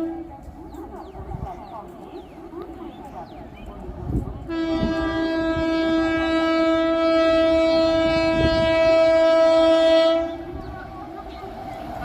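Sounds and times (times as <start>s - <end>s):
train horn blast: 0.0s - 0.4s, 4.4s - 10.6s
train rumbling: 0.0s - 12.0s.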